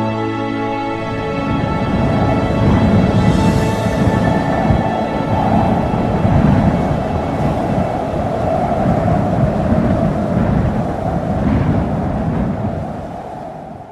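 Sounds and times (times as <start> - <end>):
loud rumbling like thunder: 0.9 - 13.9.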